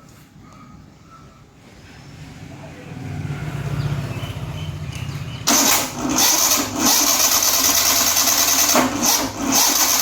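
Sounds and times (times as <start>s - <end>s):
car engine cranking by starter: 4.2s - 10.0s.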